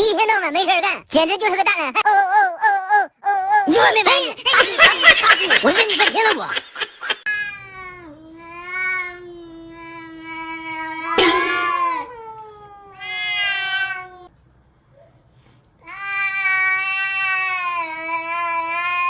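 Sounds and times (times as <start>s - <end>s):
cat yowling: 7.3s - 14.3s.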